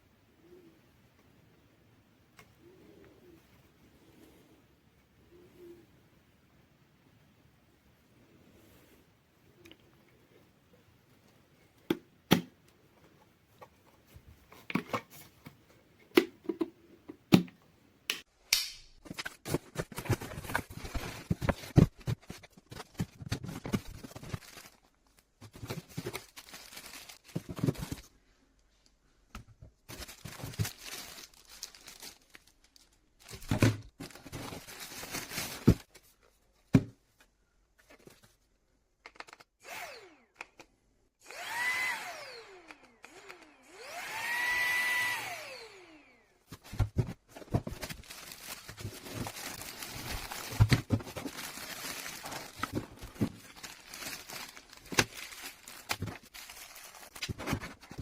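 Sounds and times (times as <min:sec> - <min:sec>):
crackly rustling: 0:29.7 - 0:36.6, 0:46.5 - 0:58.0.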